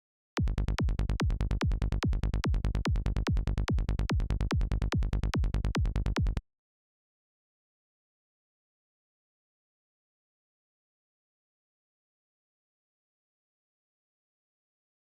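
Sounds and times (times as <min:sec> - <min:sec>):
rolling synth bass: 0:00.4 - 0:06.4
synthesized kick drum: 0:00.4 - 0:06.4.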